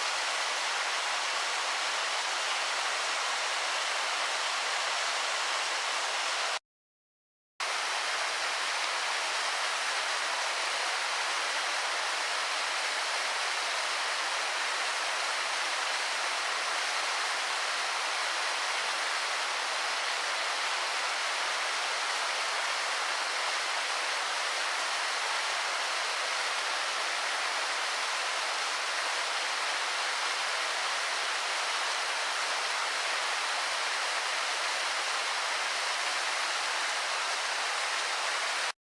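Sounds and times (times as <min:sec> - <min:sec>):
waterfall rushing: 0:07.6 - 0:38.8.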